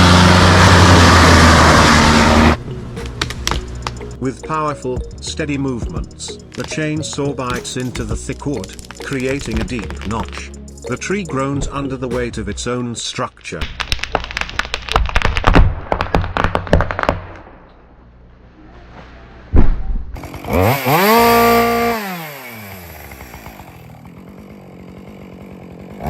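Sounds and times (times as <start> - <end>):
chainsaw revving: 0.0 - 4.2, 20.2 - 26.0
sharp knocks and cracks: 3.0 - 4.2, 5.9 - 10.5, 13.6 - 17.8
heavy thud: 19.5 - 20.2.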